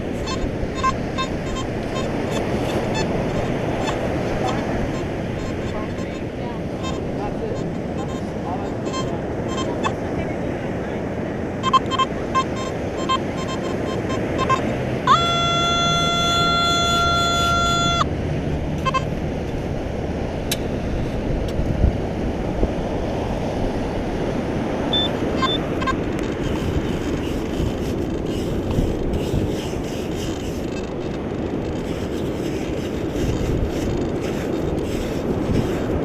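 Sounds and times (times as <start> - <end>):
metal detector held tone: 0.0 - 10.0, 11.6 - 18.1, 18.8 - 19.1, 24.9 - 31.1, 31.7 - 36.0
wind noise on microphone: 0.0 - 36.0
metal detector short beeps: 0.1 - 10.0, 11.6 - 18.1, 18.8 - 19.1, 24.9 - 26.6.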